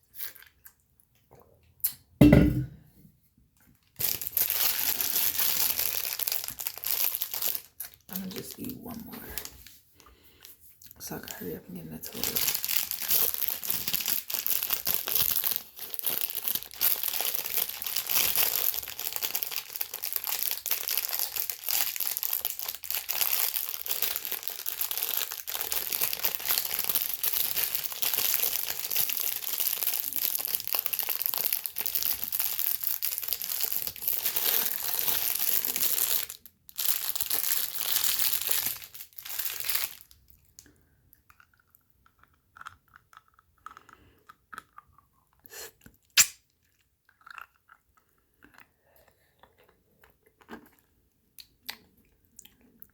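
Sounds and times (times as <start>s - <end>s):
food packaging crinkling: 3.7s - 10.3s, 12.1s - 40.8s.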